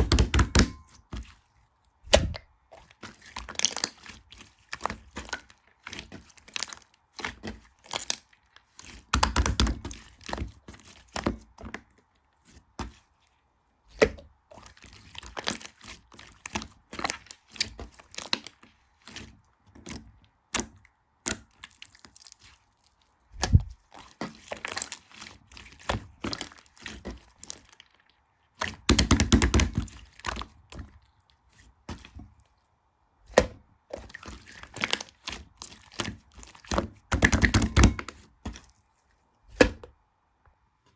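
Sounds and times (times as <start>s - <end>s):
slime squishing and popping: 28.5s - 31.0s, 33.2s - 38.8s.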